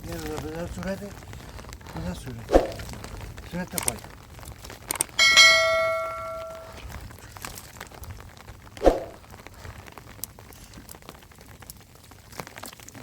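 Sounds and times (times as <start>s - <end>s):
struck metal bowl ringing: 5.2s - 6.8s.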